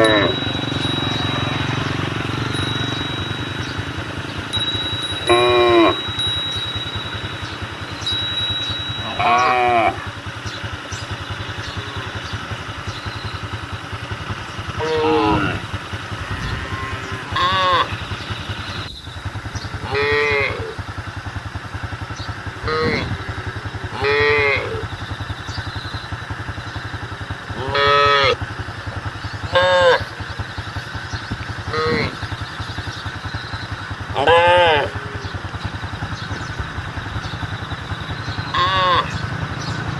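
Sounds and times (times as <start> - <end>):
cattle mooing: 0.0 - 4.5, 5.2 - 6.2, 9.0 - 10.2, 11.5 - 12.4, 14.7 - 18.1, 19.8 - 20.8, 22.6 - 24.9, 27.5 - 28.4, 29.5 - 30.1, 31.7 - 32.2, 34.1 - 35.4, 38.4 - 39.4
engine running: 0.0 - 39.9.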